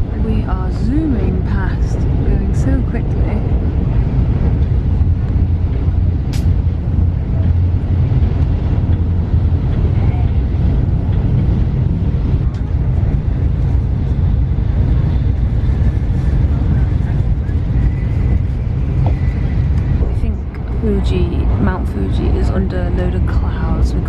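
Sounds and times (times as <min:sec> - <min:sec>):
train rumble inside carriage: 0:00.0 - 0:24.0
sharp click: 0:06.3 - 0:06.6.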